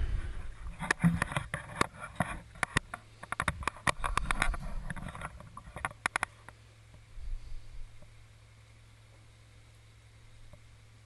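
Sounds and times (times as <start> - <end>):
faint low hum: 0.0 - 11.0
sharp clicks and taps: 0.8 - 6.3.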